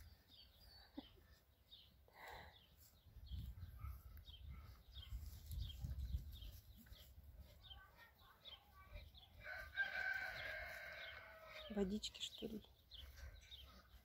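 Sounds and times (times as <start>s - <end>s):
birds chirping: 0.0s - 14.0s
rooster crowing: 9.5s - 11.5s.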